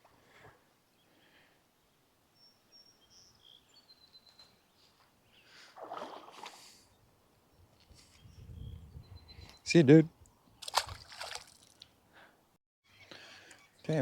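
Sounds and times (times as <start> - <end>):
faint high bird chirps: 2.4 - 5.6, 6.9 - 9.7, 12.8 - 14.0.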